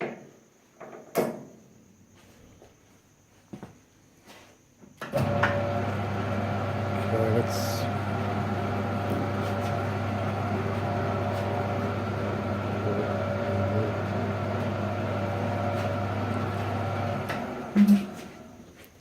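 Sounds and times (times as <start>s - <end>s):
lathe winding down: 5.1s - 18.6s
metal lathe humming: 5.2s - 18.6s.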